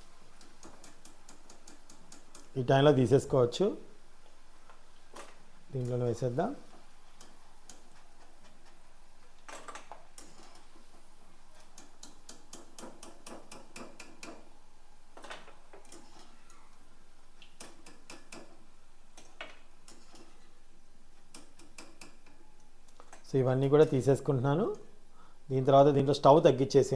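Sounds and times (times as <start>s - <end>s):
frying in hot oil crackling: 0.0s - 23.2s.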